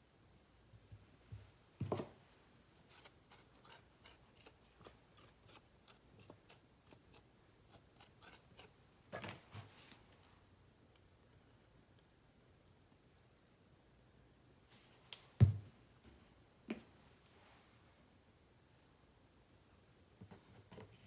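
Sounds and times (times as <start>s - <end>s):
soft thumps: 15.4s - 15.7s.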